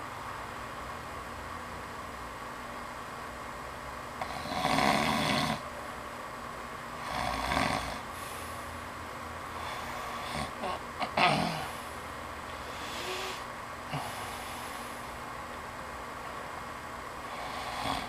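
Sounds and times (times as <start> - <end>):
man snoring: 4.2 - 5.6, 7.0 - 8.1, 9.6 - 11.8, 12.7 - 14.7, 17.2 - 18.0.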